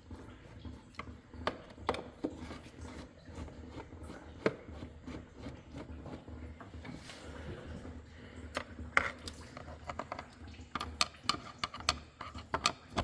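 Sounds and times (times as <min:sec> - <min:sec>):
sharp clicks and knocks: 0:08.6 - 0:13.0.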